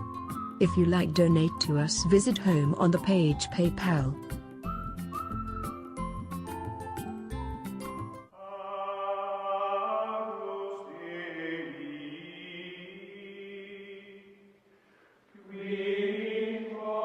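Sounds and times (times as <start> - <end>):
chant-like held voices: 8.4 - 14.4, 15.3 - 17.0.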